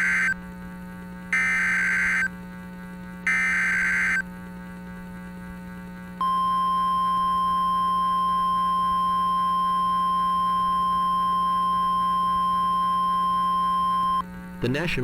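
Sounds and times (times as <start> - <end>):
loud steady warning tone: 0.0 - 0.4, 1.3 - 2.4, 3.2 - 4.2, 6.2 - 15.0
steady low hum: 0.0 - 15.0.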